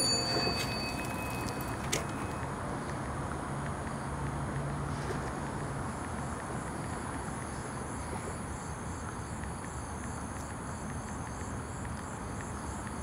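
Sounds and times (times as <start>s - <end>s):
crickets chirping: 0.0s - 4.2s.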